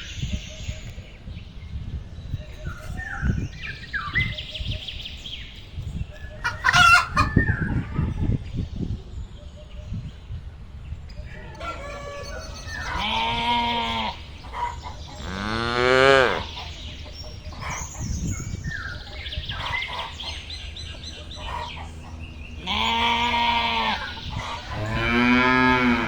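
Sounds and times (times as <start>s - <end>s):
chickens clucking: 6.3s - 8.4s, 11.3s - 26.0s.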